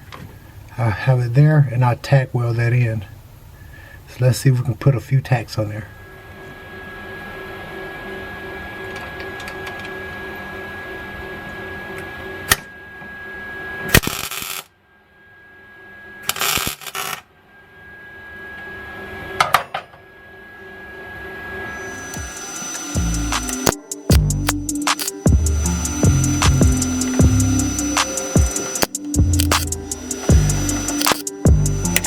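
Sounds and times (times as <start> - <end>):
welding arc bursts: 14.0 - 14.7, 16.3 - 17.2, 21.8 - 32.0
machine hum: 20.6 - 32.0
sharp clicks: 22.1 - 32.0.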